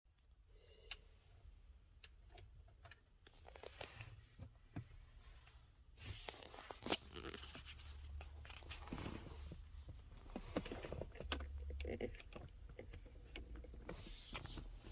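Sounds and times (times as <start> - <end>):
rustling: 5.1 - 11.4.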